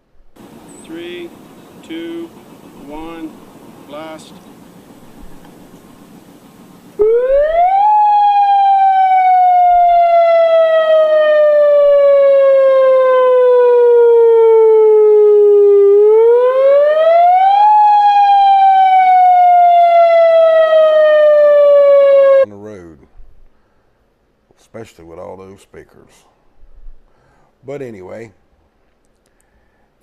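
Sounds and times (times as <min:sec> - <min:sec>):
rising and falling warning siren: 0:06.9 - 0:22.5.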